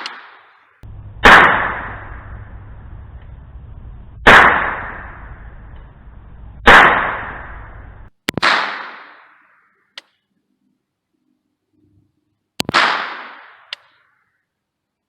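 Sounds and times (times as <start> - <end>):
gunshots: 0.0 - 0.5, 1.2 - 2.6, 4.2 - 6.0, 6.6 - 9.4, 12.6 - 13.7
faint click: 5.7 - 6.0.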